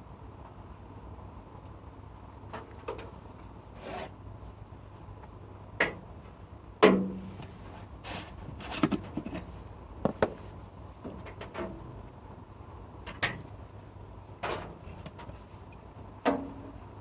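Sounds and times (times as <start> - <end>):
tools scraping and knocking: 8.1 - 10.5.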